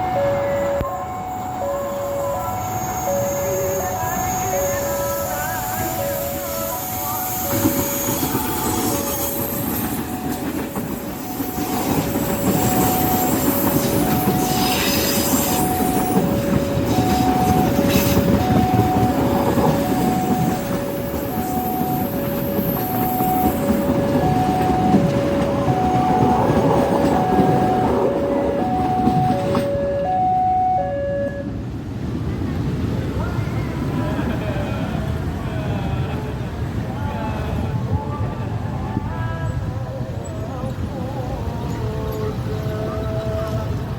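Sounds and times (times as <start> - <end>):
two-tone crossing alarm: 0.0 - 31.6
train wheels rumbling on rails: 0.0 - 43.9.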